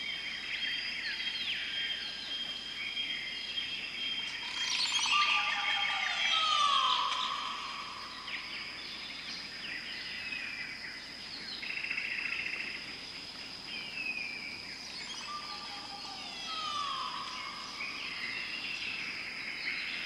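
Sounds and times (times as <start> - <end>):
bird calls: 0.0 - 11.0, 13.8 - 20.0
high-pitched insect drone: 4.1 - 9.8, 14.8 - 20.0.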